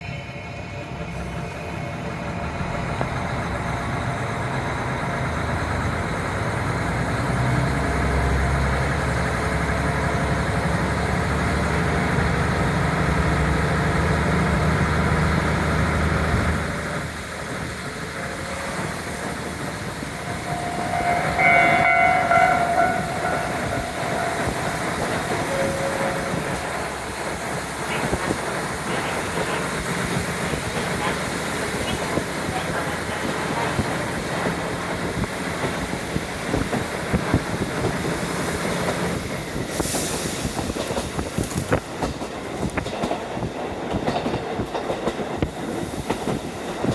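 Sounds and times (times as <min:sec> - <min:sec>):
diesel railcar engine: 0:00.0 - 0:46.9
wheel and rail noise: 0:00.2 - 0:46.9
short high-pitched tone: 0:20.2 - 0:26.7.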